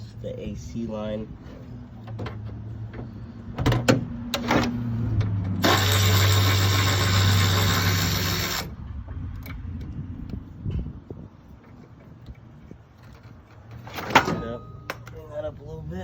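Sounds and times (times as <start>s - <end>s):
handheld power tool running: 5.6s - 8.7s.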